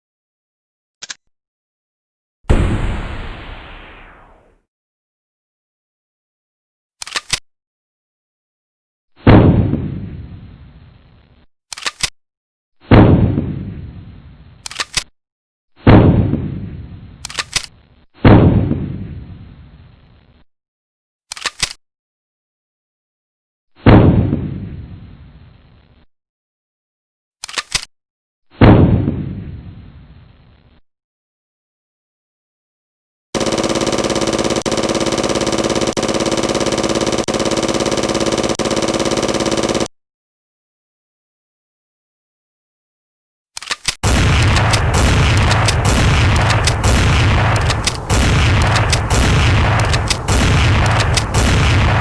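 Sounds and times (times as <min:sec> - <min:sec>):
booming gunshots: 0:02.5 - 0:04.6, 0:44.0 - 0:52.0
sharp gun cocking clicks: 0:43.6 - 0:44.8, 0:45.4 - 0:51.4.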